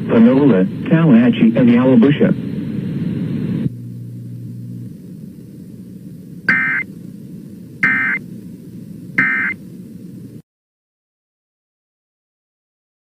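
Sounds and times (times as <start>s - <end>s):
faint low hum: 0.1s - 10.4s
shrill digital bursts: 6.5s - 6.8s, 7.8s - 8.2s.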